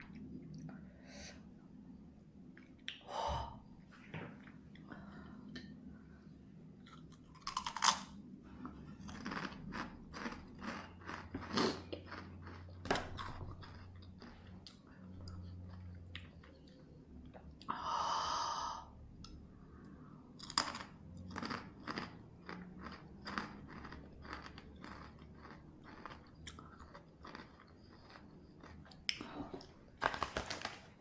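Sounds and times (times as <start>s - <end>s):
person chewing crunchy food: 6.9s - 16.6s, 20.4s - 30.6s.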